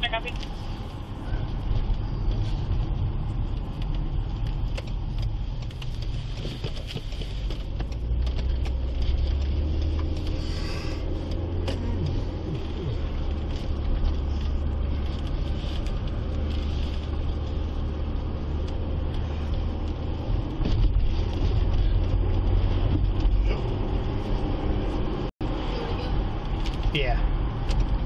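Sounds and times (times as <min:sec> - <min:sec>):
car engine and road rumble: 0:00.0 - 0:28.0.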